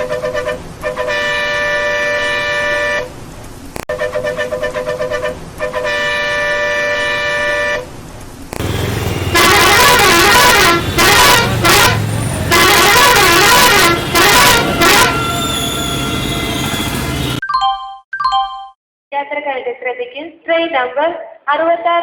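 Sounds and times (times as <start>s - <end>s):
vehicle horns honking: 0.0s - 3.1s, 3.9s - 7.9s, 8.6s - 17.4s
low traffic rumble: 0.0s - 17.4s
warbling horn blasts: 3.9s - 7.8s, 8.6s - 17.4s.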